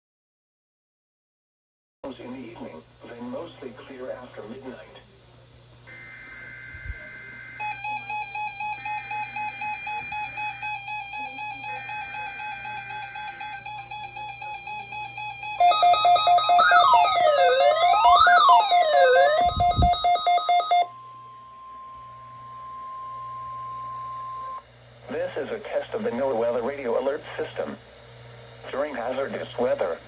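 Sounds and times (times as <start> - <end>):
siren-like sweeping tone: 5.9 - 8.5, 15.6 - 24.6
screechy digital data bursts: 5.9 - 20.9
steady alert tone: 6.0 - 20.9
stepped electronic beeping tone: 14.3 - 24.6.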